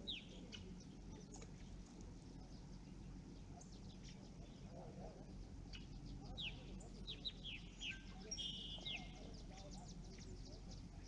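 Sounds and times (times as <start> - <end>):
bird chirps: 0.0 - 1.6, 5.6 - 11.0
low background hum: 0.0 - 11.0.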